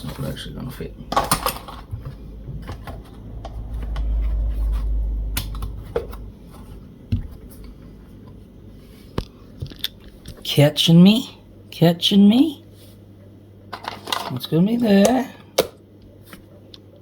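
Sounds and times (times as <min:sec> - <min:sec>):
low handling rumble: 0:00.3 - 0:08.8.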